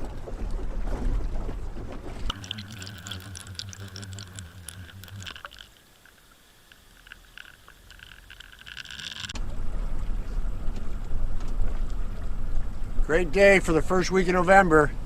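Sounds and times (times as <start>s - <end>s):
underwater hum: 0.0s - 15.0s
crackling and popping water clicks: 1.9s - 9.5s.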